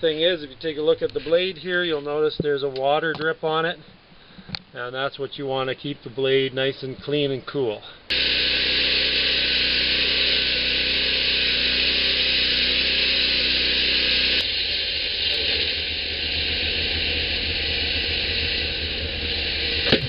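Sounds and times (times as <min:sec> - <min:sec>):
band blade hissing: 0:08.1 - 0:20.0
sawmill engine humming: 0:08.1 - 0:20.0.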